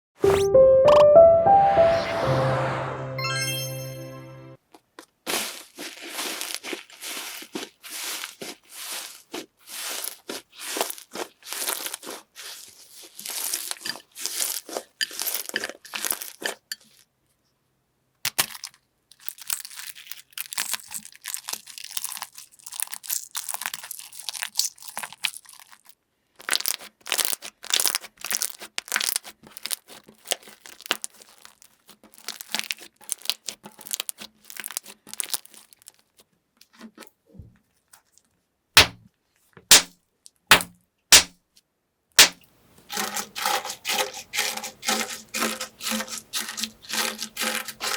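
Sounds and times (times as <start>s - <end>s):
crunchy material crackling by hand: 5.0s - 16.6s, 19.2s - 36.2s.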